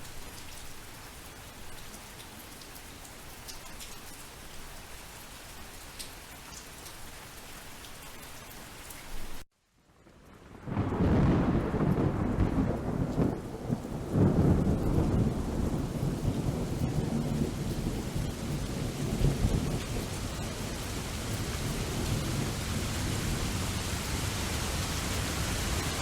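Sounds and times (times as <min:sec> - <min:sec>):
water drips: 0:00.0 - 0:04.9, 0:05.5 - 0:09.4
heavy rain: 0:00.0 - 0:26.0
steady rain: 0:00.0 - 0:26.0
deep rolling thunder: 0:10.4 - 0:26.0.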